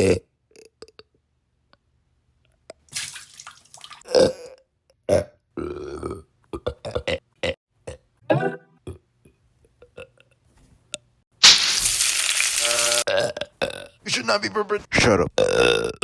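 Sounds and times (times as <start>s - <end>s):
man burping: 0.0s - 1.1s, 4.1s - 8.1s, 13.1s - 14.0s, 15.0s - 16.0s.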